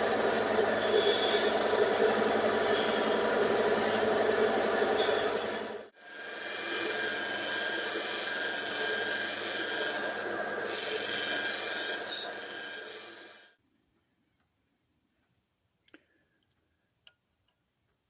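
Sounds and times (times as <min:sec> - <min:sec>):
motor hum: 0:00.0 - 0:13.0
power sander grinding steel: 0:00.0 - 0:13.6.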